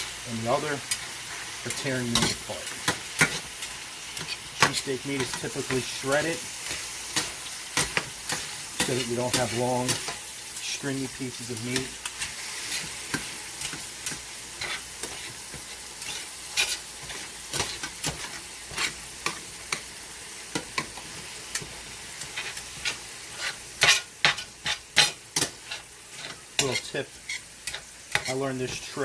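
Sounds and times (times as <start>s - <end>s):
meat sizzling in skillet: 0.0s - 29.0s
metal spatulas clinking on pan: 7.2s - 10.2s, 22.8s - 28.4s.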